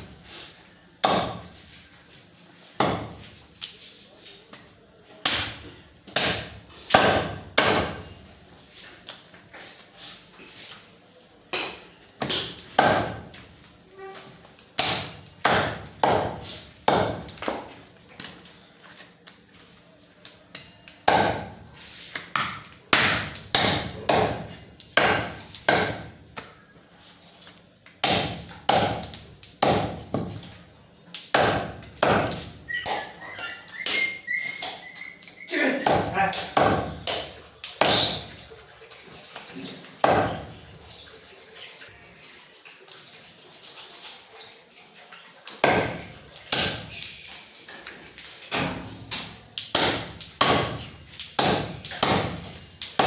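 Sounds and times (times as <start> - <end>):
knife chopping through bone: 1.0 - 1.5, 2.8 - 3.2, 5.2 - 8.0, 11.6 - 13.2, 14.8 - 17.7, 21.0 - 21.6, 22.3 - 26.1, 28.0 - 30.4, 31.3 - 33.0, 35.7 - 38.3, 40.0 - 40.5, 48.5 - 53.0.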